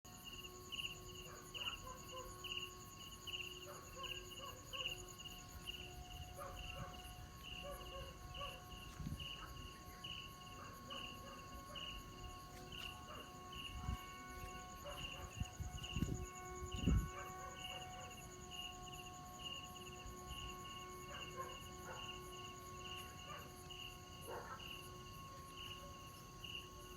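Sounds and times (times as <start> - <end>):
crickets chirping: 0.1 - 26.9
kite flutes humming in wind: 11.6 - 19.1.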